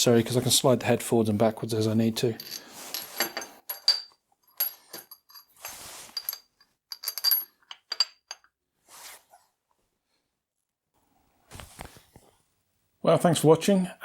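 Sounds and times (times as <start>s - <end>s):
metal clamps clinking: 2.2s - 8.5s.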